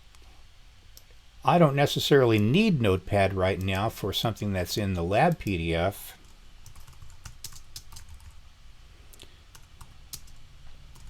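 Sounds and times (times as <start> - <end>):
faint low hum: 0.0 - 11.0
computer keyboard typing: 6.6 - 8.4, 9.5 - 11.0.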